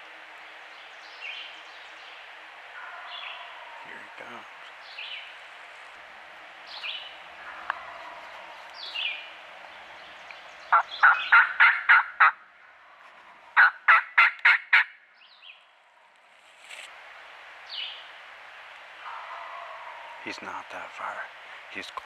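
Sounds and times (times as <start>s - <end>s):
turkey yelping: 10.7s - 12.4s, 13.6s - 14.9s.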